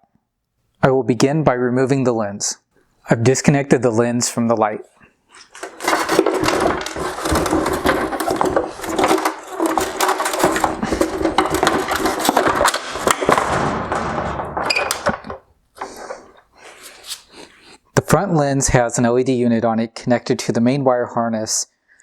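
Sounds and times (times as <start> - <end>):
plastic crackling and snapping: 5.3 - 16.3.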